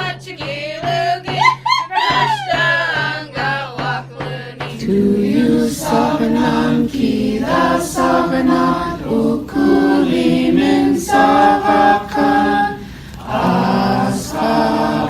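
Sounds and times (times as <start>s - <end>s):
solo voice singing: 2.2s - 15.0s
choir singing sustained chords: 4.7s - 15.0s.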